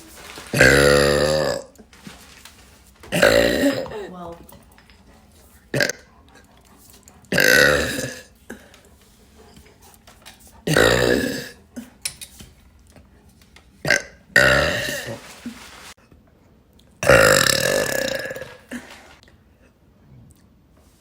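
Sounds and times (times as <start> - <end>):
woman burping loudly: 0.6 - 1.8, 3.1 - 4.2, 5.7 - 6.0, 7.3 - 8.3, 10.7 - 11.6, 13.8 - 15.1, 17.0 - 19.0.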